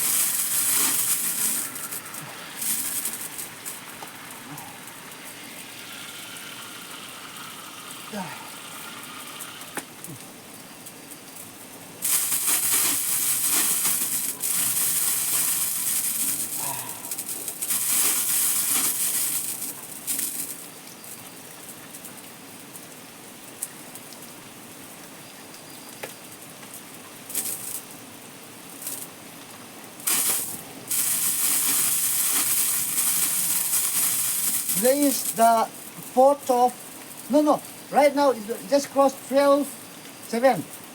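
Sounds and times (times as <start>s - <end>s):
water pouring and splashing: 0.0s - 9.7s, 12.0s - 20.8s, 30.0s - 37.4s.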